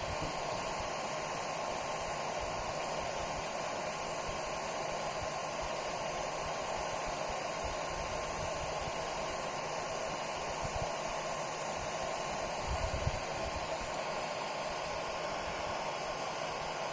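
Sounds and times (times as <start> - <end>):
small cooling fan whirring: 0.0 - 16.9.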